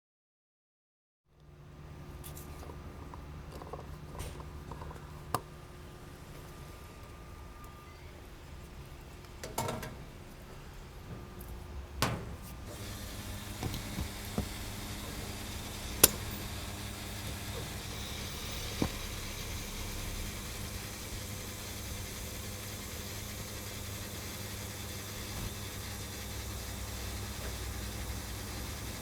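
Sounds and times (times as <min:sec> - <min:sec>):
fuel pump humming: 0:01.5 - 0:07.0, 0:11.5 - 0:29.0
fuel flowing hiss: 0:12.7 - 0:29.0
fuel nozzle clicks and clunks: 0:12.8 - 0:16.5.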